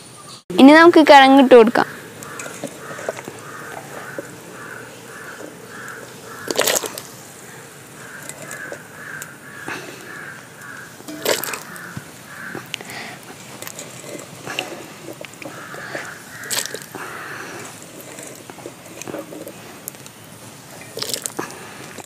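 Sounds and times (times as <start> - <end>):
crow cawing: 1.8 - 13.2, 14.5 - 18.3.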